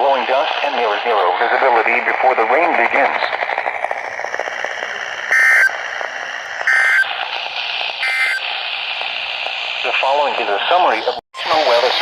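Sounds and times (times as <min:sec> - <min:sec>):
radio hiss: 0:00.0 - 0:12.0
buzzy data bursts: 0:04.9 - 0:08.7.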